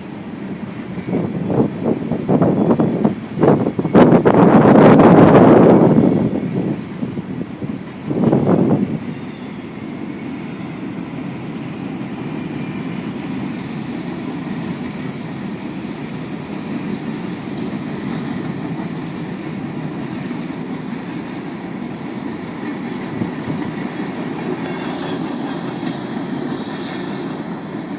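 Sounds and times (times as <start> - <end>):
freight train rumbling past: 0.0 - 27.9
rail noise: 0.0 - 27.9.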